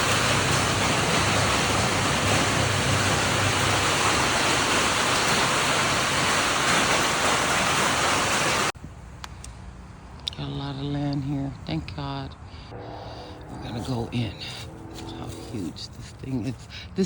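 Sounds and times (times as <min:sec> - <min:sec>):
rain falling: 0:00.0 - 0:08.8.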